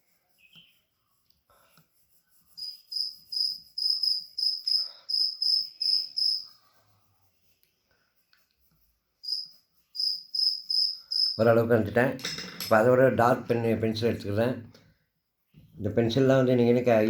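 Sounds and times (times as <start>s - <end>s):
pencil scratching on paper: 0.0s - 11.5s
cricket chirping: 2.6s - 6.5s, 9.2s - 11.4s.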